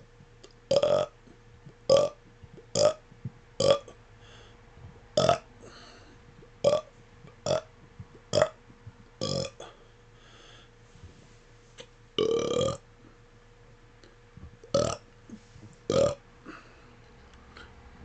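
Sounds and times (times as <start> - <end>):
man burping: 0.7 - 3.0, 3.6 - 4.0, 5.2 - 5.8, 6.6 - 7.7, 9.2 - 9.8, 12.2 - 12.8, 14.7 - 15.0, 15.9 - 16.6.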